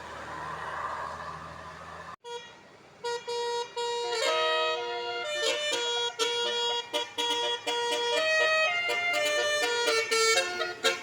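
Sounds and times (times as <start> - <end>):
vehicle noise: 0.0 - 11.0
musical bus horn playing a tune: 2.2 - 11.0.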